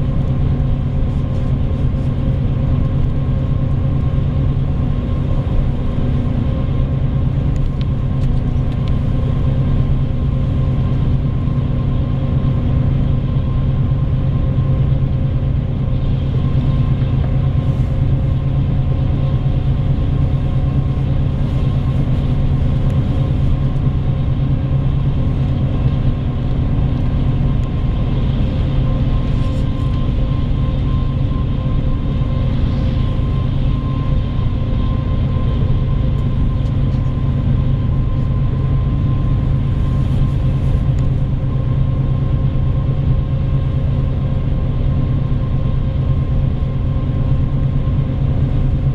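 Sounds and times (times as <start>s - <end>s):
bus engine drone: 0.0s - 48.9s
road noise: 15.8s - 41.7s.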